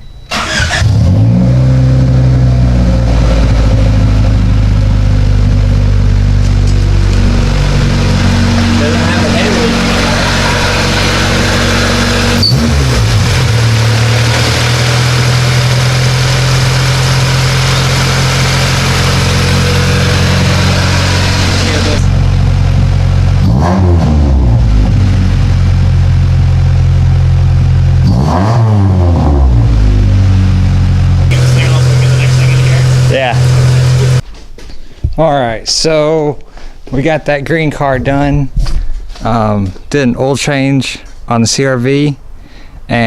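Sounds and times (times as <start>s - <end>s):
car engine idling and revving: 0.3s - 34.2s.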